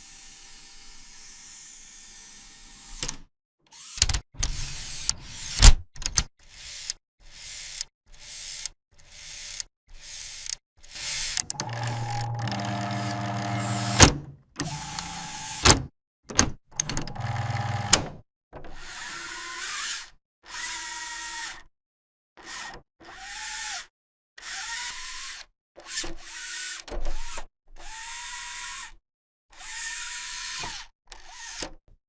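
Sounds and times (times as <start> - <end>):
small electric motors whirring: 3.7 - 5.6, 6.4 - 15.7, 17.1 - 18.0.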